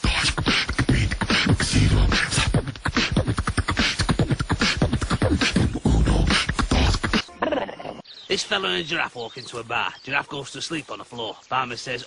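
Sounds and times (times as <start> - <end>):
person beatboxing: 0.0 - 7.3.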